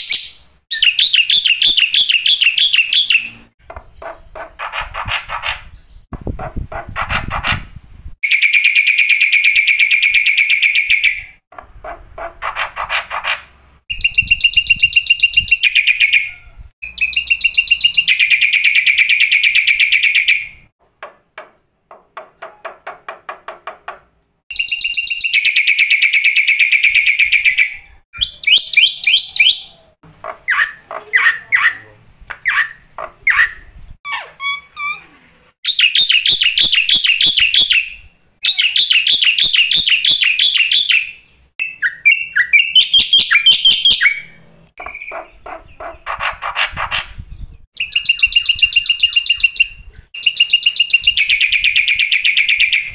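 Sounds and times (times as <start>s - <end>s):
bird singing trills: 13.9s - 19.4s, 24.5s - 26.4s, 35.7s - 46.1s, 47.2s - 51.6s.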